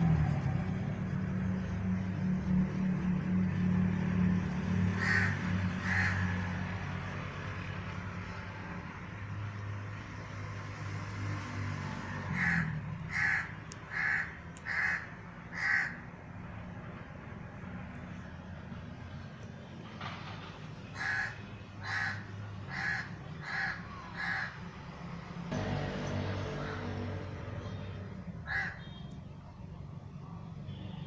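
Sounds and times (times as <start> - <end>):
crows cawing: 4.9 - 6.6, 12.2 - 16.1, 20.8 - 24.7, 26.6 - 27.0, 28.4 - 29.0.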